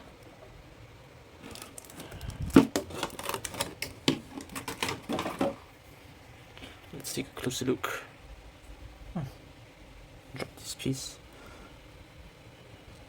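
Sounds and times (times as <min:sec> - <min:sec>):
plastic figure and packaging handled: 0:01.4 - 0:05.6.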